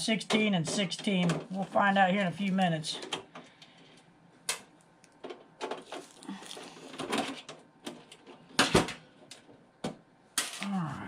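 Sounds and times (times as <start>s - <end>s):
clicks and knocks handling computer case: 0.2s - 1.9s.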